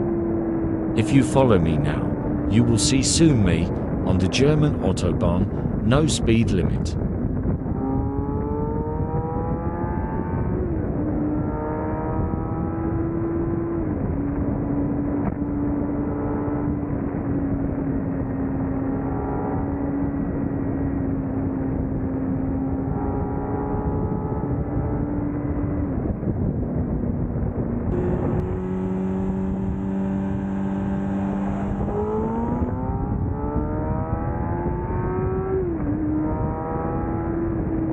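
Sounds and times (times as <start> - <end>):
motorcycle engine accelerating: 0.0 - 1.4, 7.0 - 37.9
motorcycle engine running: 27.9 - 33.9.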